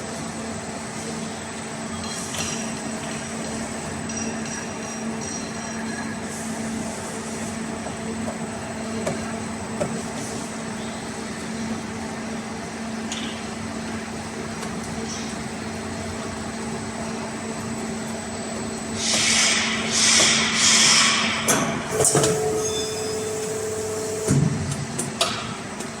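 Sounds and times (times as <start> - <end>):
machine motor hum: 21.9 - 24.8.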